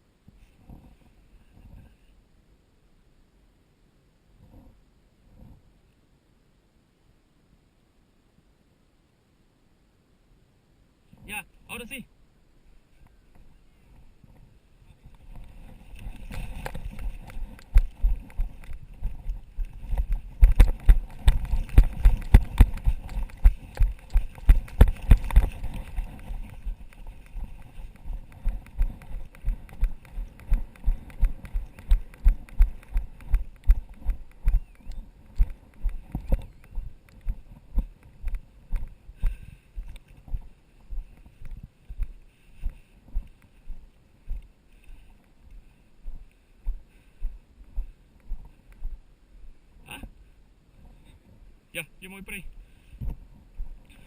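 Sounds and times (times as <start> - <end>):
running footsteps: 13.3 - 49.0.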